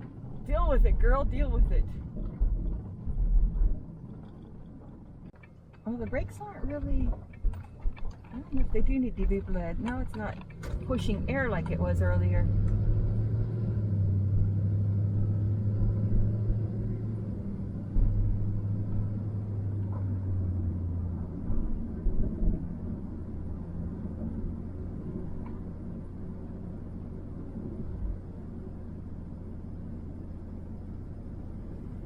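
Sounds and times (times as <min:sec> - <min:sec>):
low thumps: 0:00.0 - 0:20.4
road rumble: 0:00.0 - 0:32.0
van engine drone: 0:00.0 - 0:32.0.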